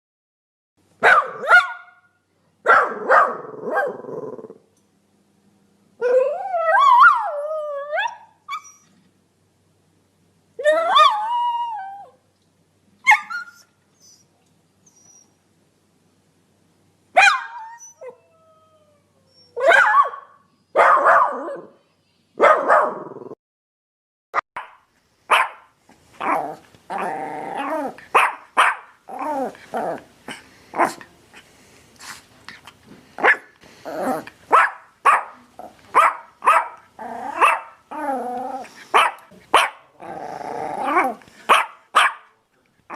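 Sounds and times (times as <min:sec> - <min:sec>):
dog barking: 0:01.0 - 0:04.0, 0:17.2 - 0:17.6, 0:19.6 - 0:21.8, 0:22.4 - 0:23.1, 0:24.6 - 0:26.4, 0:28.1 - 0:29.0, 0:33.2 - 0:33.5, 0:34.5 - 0:37.8, 0:39.0 - 0:39.9, 0:41.5 - 0:42.4.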